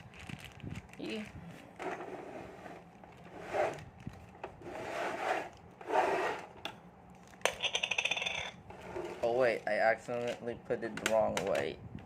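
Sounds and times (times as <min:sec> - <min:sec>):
plastic toy parts scraping: 0:07.6 - 0:10.4.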